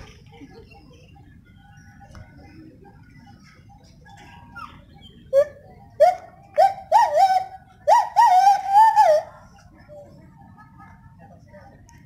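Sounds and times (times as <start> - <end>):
gibbon hooting calls: 4.2 - 10.1.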